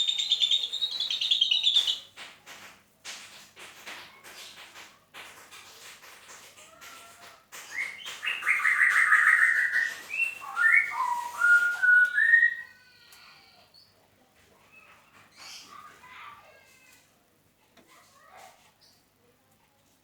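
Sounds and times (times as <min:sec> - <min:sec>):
songbird singing: 0:00.0 - 0:02.1, 0:07.7 - 0:12.7.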